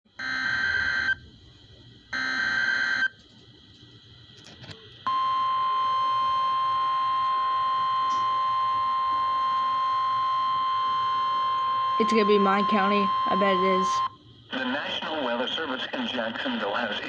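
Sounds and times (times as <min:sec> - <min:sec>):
steady alarm tone: 0:00.2 - 0:01.2, 0:02.2 - 0:03.2, 0:05.1 - 0:14.2
data tone bursts: 0:05.1 - 0:14.2.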